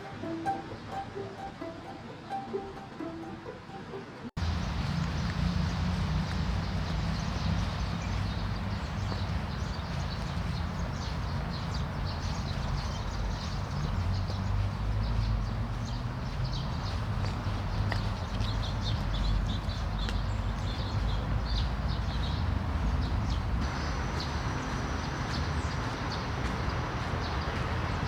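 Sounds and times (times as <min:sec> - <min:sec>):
birds chirping: 0:04.4 - 0:28.0
steady low rumble: 0:04.4 - 0:28.0.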